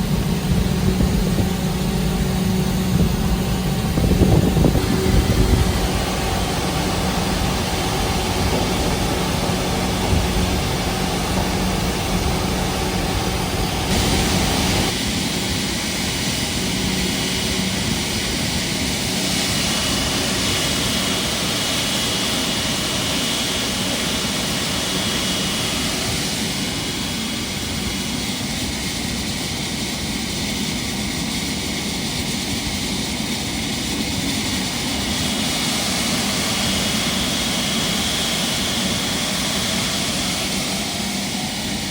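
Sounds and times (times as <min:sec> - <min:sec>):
thin high whine: 0:00.0 - 0:23.2
jet engines rushing air: 0:00.0 - 0:41.9.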